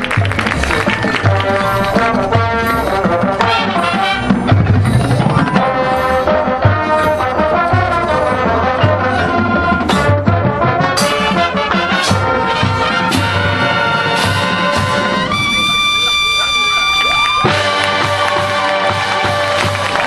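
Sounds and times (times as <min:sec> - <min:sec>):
marching band brass melody: 0:00.0 - 0:20.0.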